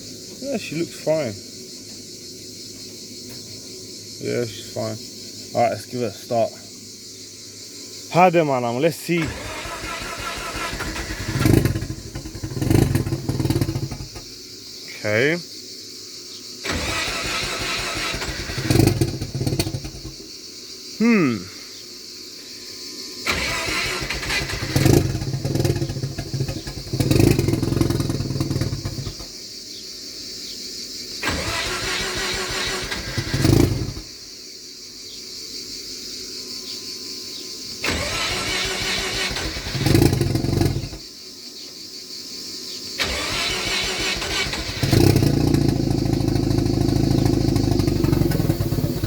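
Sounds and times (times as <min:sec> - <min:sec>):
engine throttle blips: 0:09.2 - 0:14.2, 0:16.7 - 0:20.2, 0:23.3 - 0:29.2, 0:37.8 - 0:41.0, 0:43.0 - 0:49.0
car engine running rough: 0:09.2 - 0:14.3, 0:16.7 - 0:20.2, 0:23.3 - 0:29.3, 0:31.2 - 0:34.1, 0:37.8 - 0:41.0, 0:43.0 - 0:49.0.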